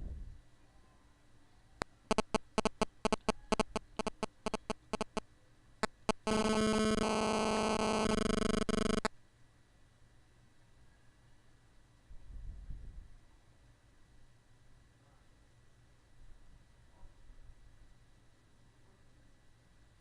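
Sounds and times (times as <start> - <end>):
sharp electronic clicks: 1.8 - 5.2, 5.8 - 9.1
synthesized buzzing tone: 2.1 - 5.2, 5.8 - 9.1.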